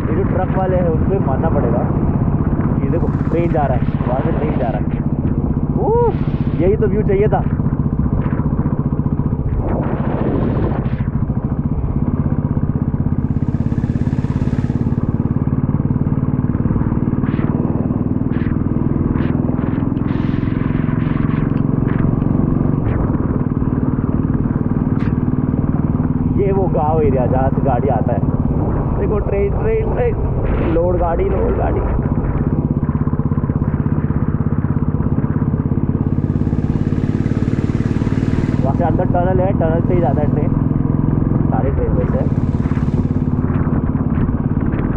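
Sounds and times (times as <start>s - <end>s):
motorcycle engine cruising: 0.0s - 44.9s
rush of noise: 0.0s - 44.9s
wind hiss: 2.9s - 4.6s, 13.2s - 15.3s, 36.0s - 40.4s, 42.0s - 44.6s.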